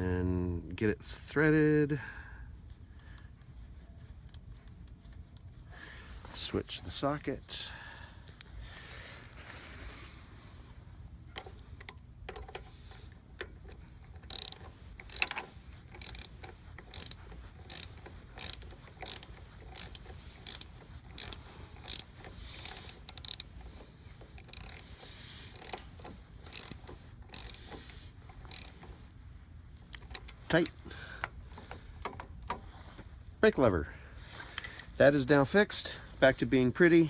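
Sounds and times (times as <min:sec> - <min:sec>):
ratchet wrench clicking: 0:08.3 - 0:08.5, 0:12.3 - 0:28.9.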